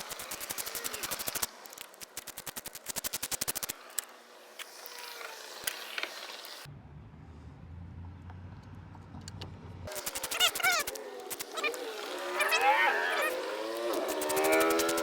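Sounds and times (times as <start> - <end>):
hand ratchet clicking: 0.0 - 4.1, 9.9 - 11.8, 13.7 - 15.0.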